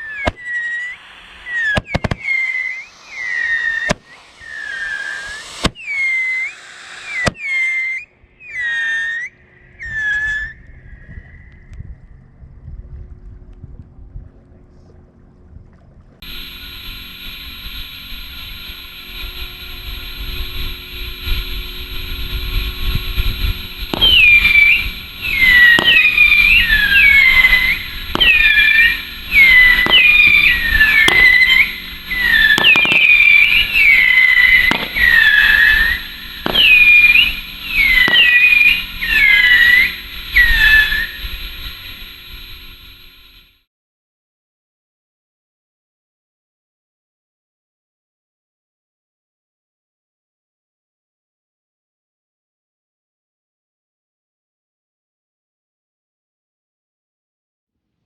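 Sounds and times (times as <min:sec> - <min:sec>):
firework shots launching: 0:00.0 - 0:09.2, 0:16.2 - 0:43.4
falling firework whistles: 0:00.0 - 0:11.7, 0:16.2 - 0:43.6
fuse hissing: 0:00.8 - 0:07.4, 0:16.2 - 0:43.4.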